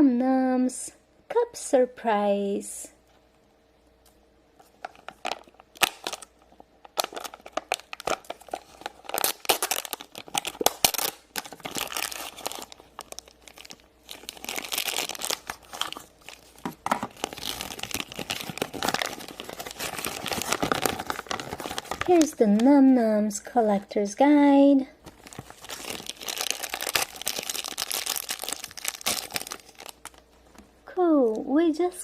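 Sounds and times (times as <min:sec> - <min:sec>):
plastic tearing: 0:04.6 - 0:22.7, 0:25.1 - 0:30.3
plastic packaging crinkling: 0:04.6 - 0:22.9, 0:25.0 - 0:30.7.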